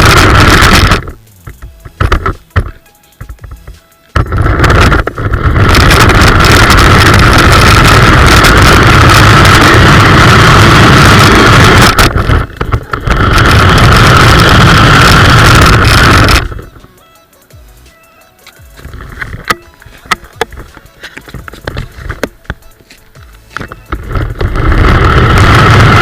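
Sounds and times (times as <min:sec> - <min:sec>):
toy car electric motor whine: 0:00.0 - 0:01.2, 0:04.2 - 0:16.8, 0:23.6 - 0:26.0.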